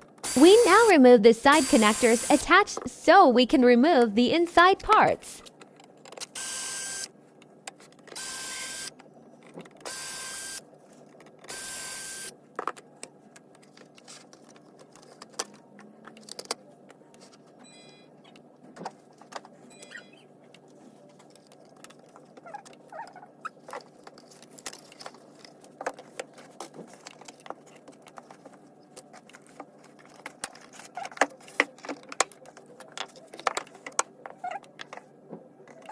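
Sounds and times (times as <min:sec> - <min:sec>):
small motor whirring: 0:06.4 - 0:07.1, 0:08.2 - 0:08.9, 0:09.9 - 0:10.6, 0:11.5 - 0:12.3.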